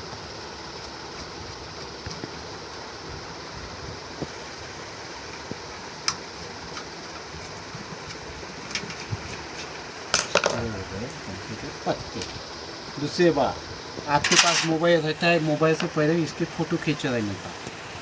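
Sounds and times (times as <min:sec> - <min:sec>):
steady background hum: 0:00.0 - 0:18.0
metallic clicks and clinks: 0:14.2 - 0:14.8
metal clatter: 0:14.2 - 0:14.9.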